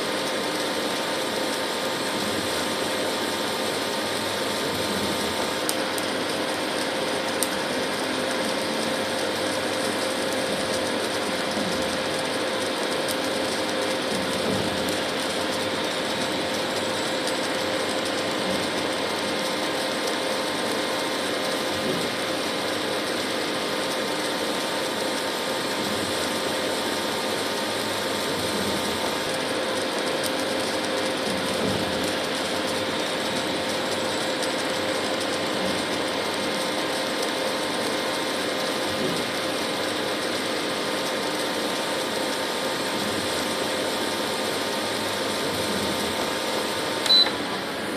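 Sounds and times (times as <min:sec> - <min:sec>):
induction cooktop humming: 0:00.0 - 0:47.9.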